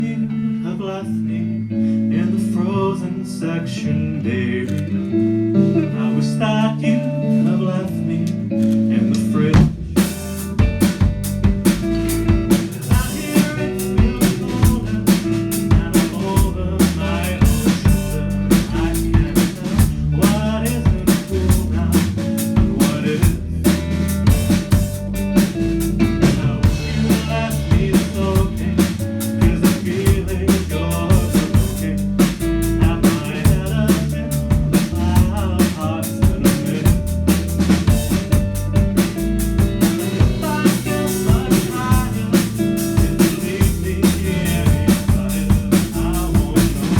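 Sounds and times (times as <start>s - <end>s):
drum kit beat: 9.6s - 46.9s
live band playing: 9.6s - 46.9s.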